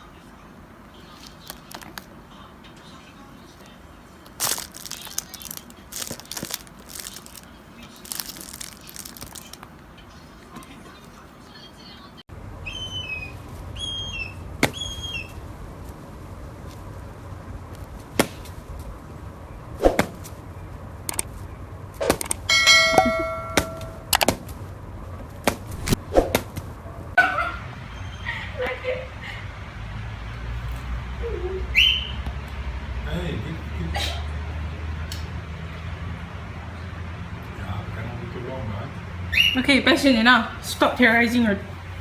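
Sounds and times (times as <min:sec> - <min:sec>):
small bird chirping: 0:12.6 - 0:15.4.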